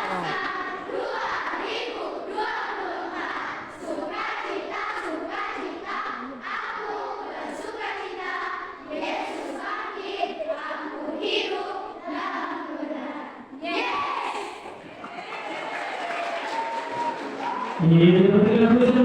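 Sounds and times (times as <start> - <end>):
group singing in unison: 0.0 - 15.1.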